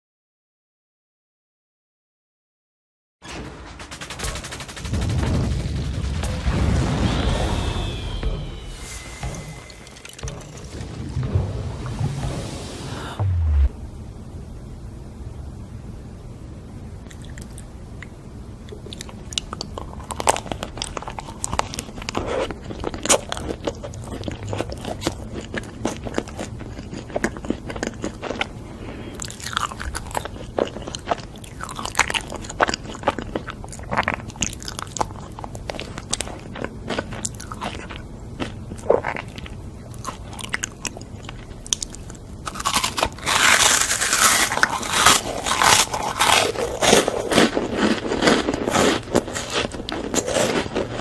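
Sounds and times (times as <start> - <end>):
person chewing and biting food: 17.0 - 51.0.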